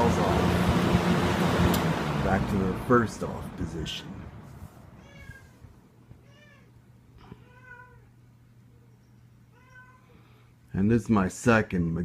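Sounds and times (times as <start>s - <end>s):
low steady hum: 0.0s - 12.0s
cat meowing softly: 5.0s - 8.2s, 9.5s - 10.3s.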